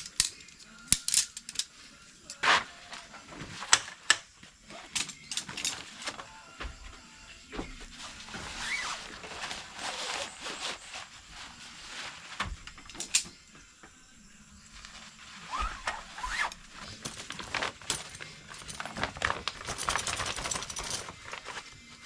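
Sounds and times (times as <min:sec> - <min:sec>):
objects clicking and knocking: 0:00.0 - 0:01.7, 0:04.9 - 0:06.2, 0:12.4 - 0:13.4, 0:16.8 - 0:21.6.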